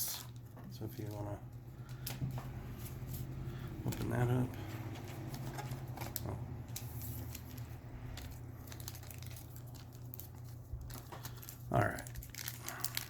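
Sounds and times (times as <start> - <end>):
steady low hum: 0.0 - 13.0
wrapper crinkling and tearing: 5.3 - 13.0.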